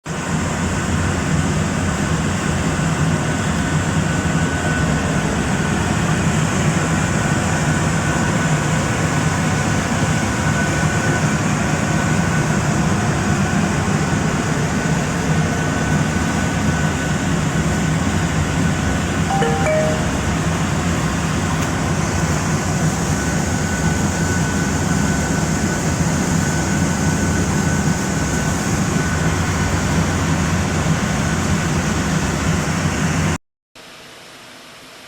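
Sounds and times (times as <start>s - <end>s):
thin high whine: 19.3s - 20.8s.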